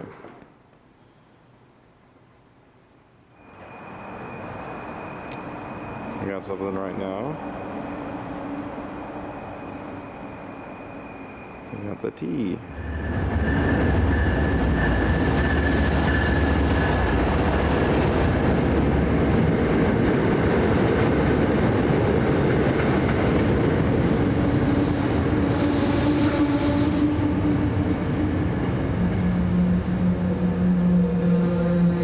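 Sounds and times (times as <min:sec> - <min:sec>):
high-pitched squeal: 0:03.4 - 0:18.5, 0:22.8 - 0:32.0
train wheels rumbling on track: 0:03.5 - 0:32.0.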